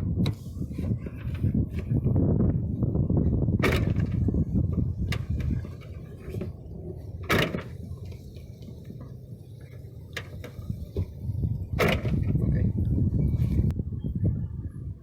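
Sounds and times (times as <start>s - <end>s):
low rumble: 0.0s - 15.0s
truck door clunking shut: 3.5s - 8.4s, 10.2s - 12.6s.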